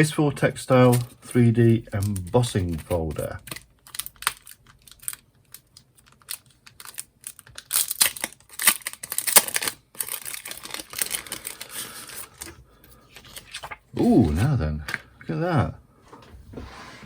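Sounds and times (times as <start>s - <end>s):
plastic packaging crackling: 0.8s - 13.9s.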